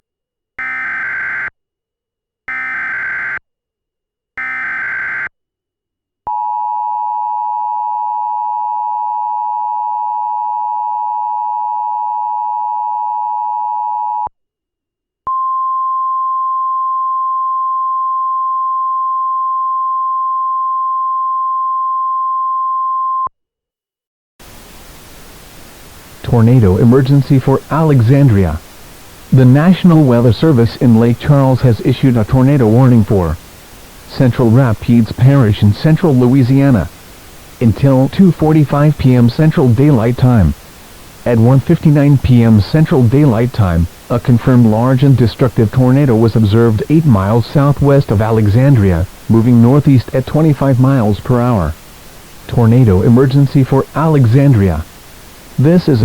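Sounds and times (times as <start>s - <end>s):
steady alarm tone: 0.6s - 1.5s, 2.5s - 3.4s, 4.4s - 5.3s
radio static hiss: 24.4s - 56.0s.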